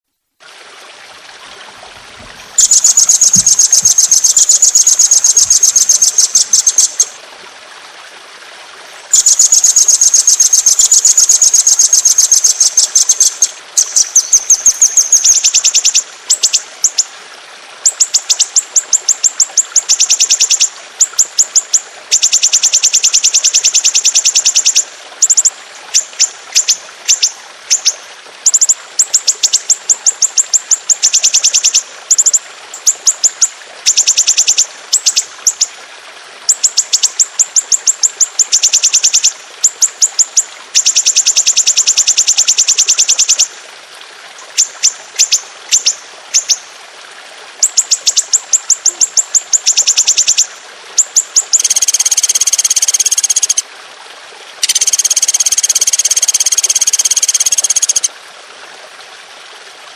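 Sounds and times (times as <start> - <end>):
songbird rapid rolling trills: 2.5 - 7.2, 9.1 - 16.5, 51.4 - 53.6, 54.6 - 58.1.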